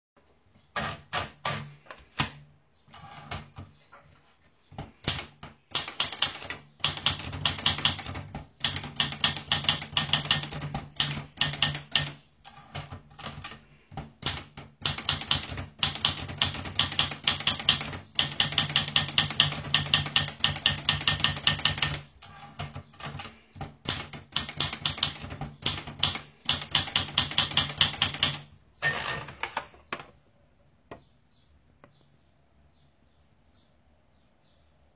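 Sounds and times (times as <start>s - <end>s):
rapid keyboard typing: 4.8s - 28.5s.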